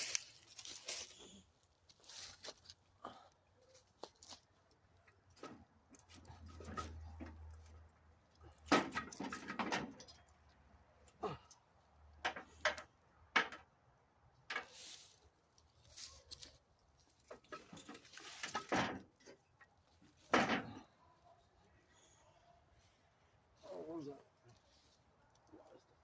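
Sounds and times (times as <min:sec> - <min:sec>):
parts and tools clinking: 0:05.0 - 0:11.2.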